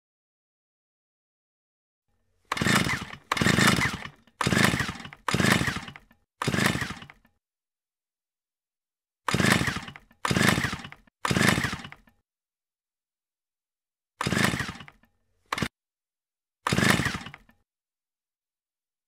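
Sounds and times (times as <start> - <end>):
chainsaw buzzing in short bursts: 2.4 - 7.2, 9.3 - 12.1, 14.2 - 15.7, 16.6 - 17.5.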